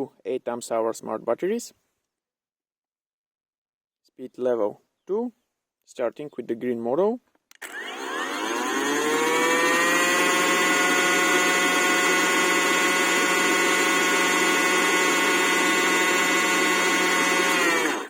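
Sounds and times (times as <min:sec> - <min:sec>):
cordless chainsaw motor whine: 0:07.5 - 0:18.0.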